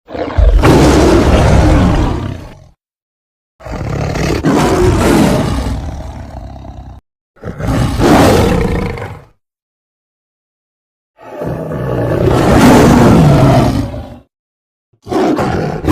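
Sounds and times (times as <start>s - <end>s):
deep creature roars: 0.1s - 2.8s, 3.6s - 9.3s, 11.2s - 14.3s, 15.0s - 15.9s.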